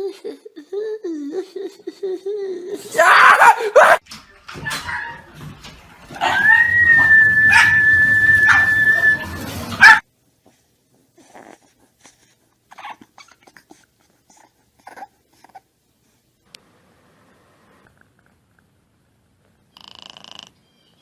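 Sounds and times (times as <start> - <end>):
dog yelping: 3.0 - 4.0, 4.6 - 5.3, 6.1 - 10.0, 12.7 - 13.7
dog whining: 6.2 - 10.0, 12.7 - 15.7.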